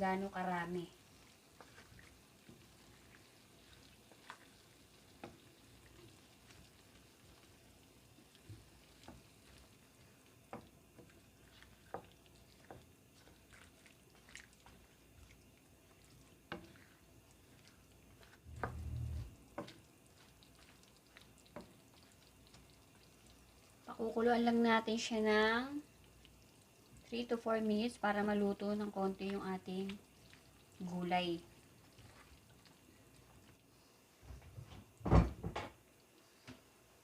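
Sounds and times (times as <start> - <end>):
pot simmering ticks and pops: 0.7 - 33.7, 35.8 - 36.7.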